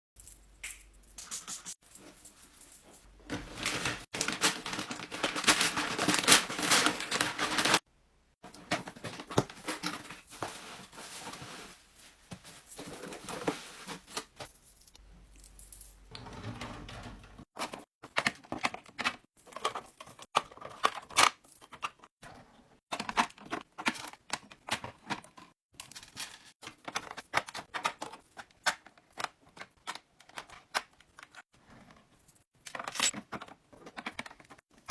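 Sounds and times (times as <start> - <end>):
packaging rustling and tearing: 3.3 - 7.8.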